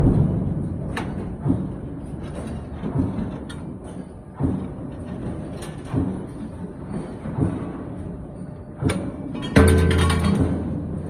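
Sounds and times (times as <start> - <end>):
machine thuds: 0.0 - 8.1, 8.8 - 11.0.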